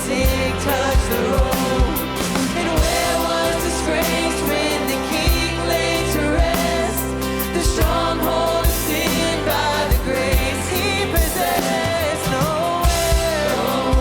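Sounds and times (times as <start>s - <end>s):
person singing: 0.0s - 14.0s
steady drum beat: 0.0s - 14.0s
sustained bass: 0.0s - 14.0s.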